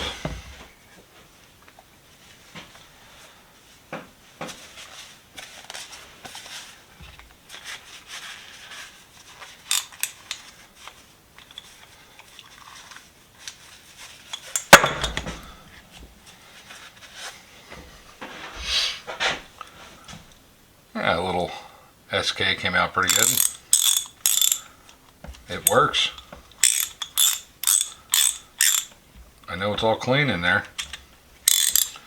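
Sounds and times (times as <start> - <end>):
metal tools clicking and rattling: 9.7 - 10.5, 14.3 - 15.3, 23.0 - 24.7, 25.5 - 29.0, 30.8 - 32.0.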